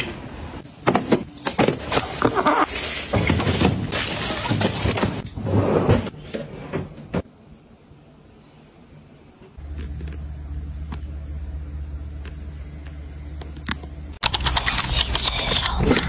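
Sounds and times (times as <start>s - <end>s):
dense crackling handling noise: 1.3s - 5.3s
low machine hum: 7.7s - 14.2s.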